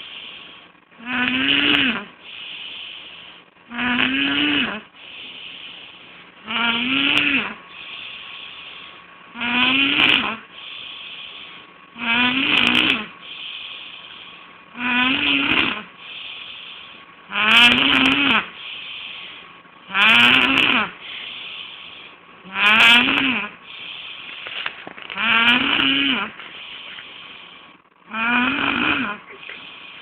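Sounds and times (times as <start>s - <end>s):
man snoring heavily: 1.0s - 2.1s, 3.7s - 4.8s, 6.4s - 7.6s, 9.4s - 10.4s, 12.0s - 13.1s, 14.7s - 15.9s, 17.3s - 18.5s, 19.9s - 21.0s, 22.5s - 23.6s, 25.2s - 26.3s, 28.1s - 29.2s.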